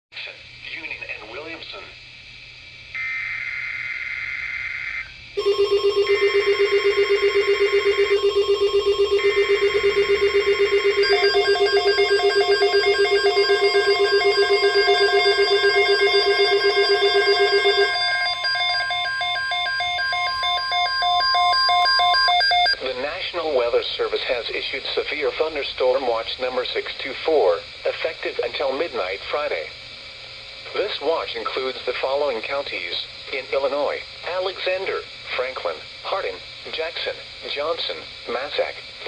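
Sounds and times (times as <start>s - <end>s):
pulsing electronic alarm: 2.9s - 22.8s
screeching data tones: 2.9s - 22.8s
steady warning alarm tone: 2.9s - 22.9s.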